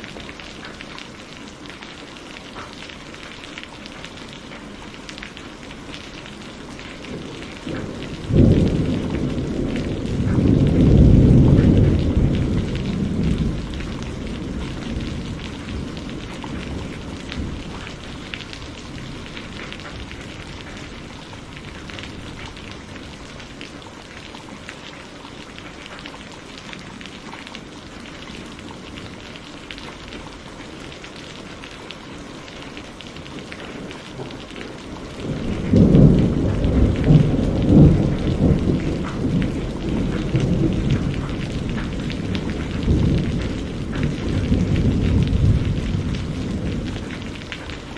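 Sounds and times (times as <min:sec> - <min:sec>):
steady rain: 0:00.0 - 0:47.9
rolling thunder: 0:07.0 - 0:23.5, 0:33.2 - 0:47.9.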